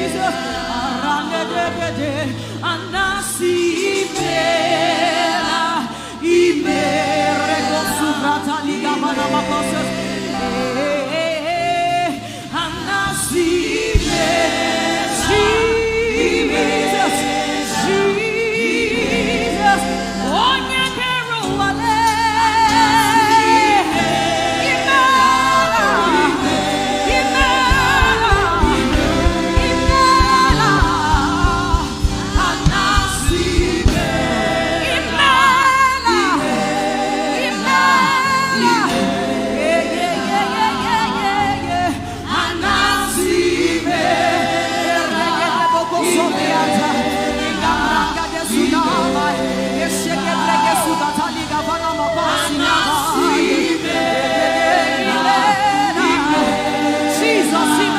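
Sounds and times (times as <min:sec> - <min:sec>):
gospel choir singing: 0:00.0 - 0:57.9
instrumental accompaniment: 0:12.8 - 0:57.9
quick bass beat: 0:26.9 - 0:34.3.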